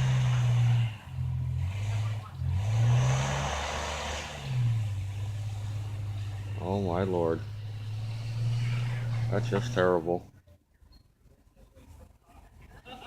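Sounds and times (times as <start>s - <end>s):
car engine revving: 0.0s - 10.3s.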